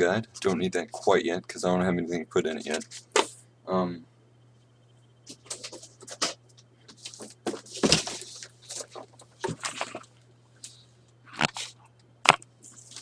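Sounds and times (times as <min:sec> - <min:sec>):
faint low hum: 0:00.0 - 0:13.0
cardboard scraping and rustling: 0:05.3 - 0:10.1.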